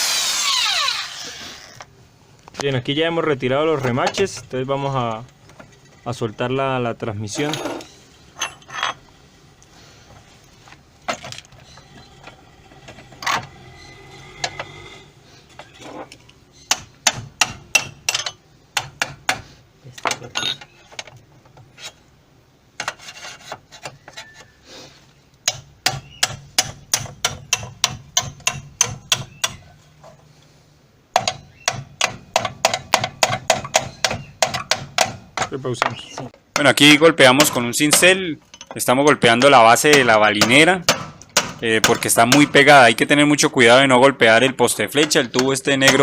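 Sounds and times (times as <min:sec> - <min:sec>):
hammer striking a chisel: 0:16.7 - 0:19.4, 0:25.4 - 0:29.6, 0:31.2 - 0:36.0, 0:39.2 - 0:42.6, 0:45.0 - 0:46.0.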